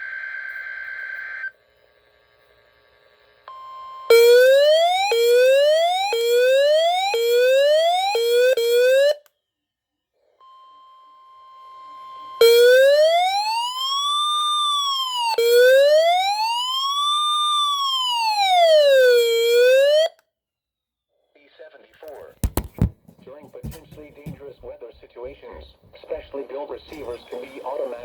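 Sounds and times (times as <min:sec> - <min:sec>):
electronic siren sweeps: 0:11.6 - 0:20.1.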